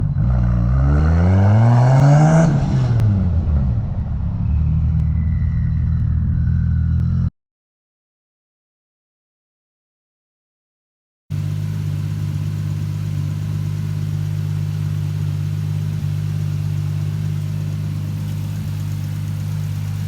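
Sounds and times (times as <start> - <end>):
car engine idling: 11.3 - 20.0.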